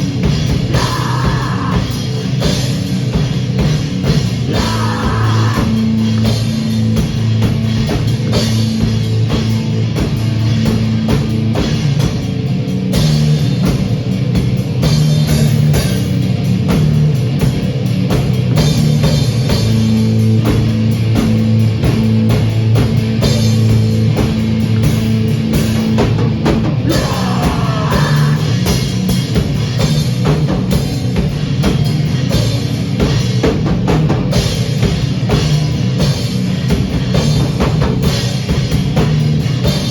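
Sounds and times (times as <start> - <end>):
bass guitar: 0.0 - 39.9
distorted guitar: 0.0 - 39.9
drum kit and cymbals: 0.0 - 39.9.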